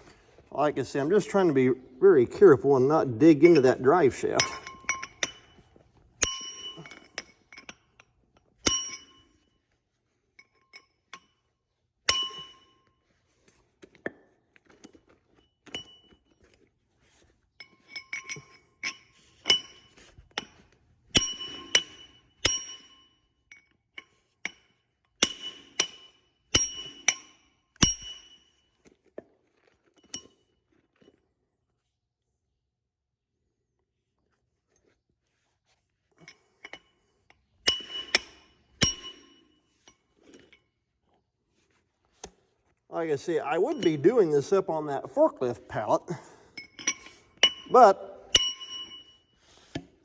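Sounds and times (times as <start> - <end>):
hammer striking steel: 47.4 - 49.0.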